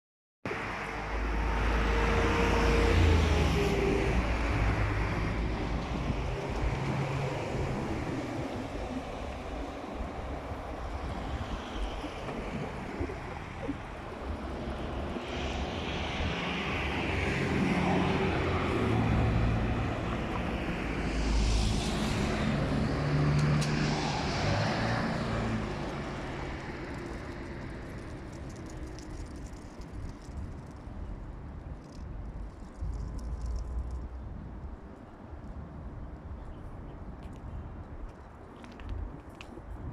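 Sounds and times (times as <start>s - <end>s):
motor vehicles passing: 0.6s - 30.3s.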